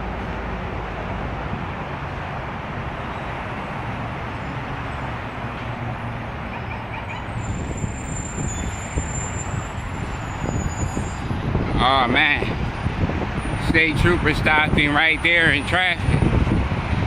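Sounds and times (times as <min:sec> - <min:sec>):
moving vehicle rumble: 0:00.0 - 0:17.0
faint high squeals: 0:06.6 - 0:11.3.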